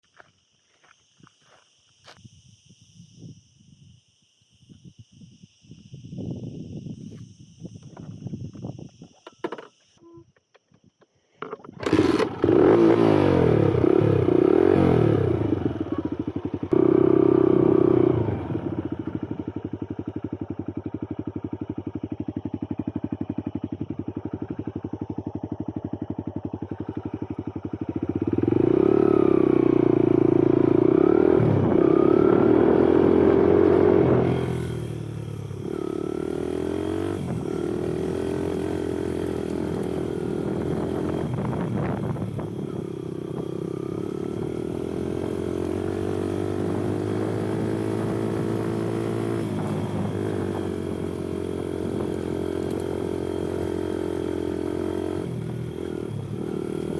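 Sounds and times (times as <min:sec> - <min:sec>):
motorcycle engine revving: 0:11.8 - 0:56.9.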